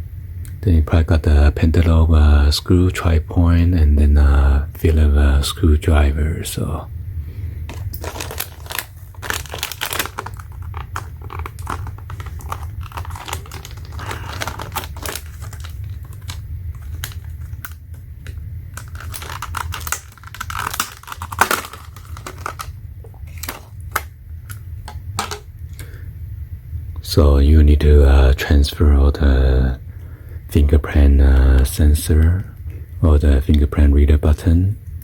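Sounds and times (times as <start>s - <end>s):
low hum: 0.0s - 35.0s
plastic packaging crinkling: 7.7s - 25.5s.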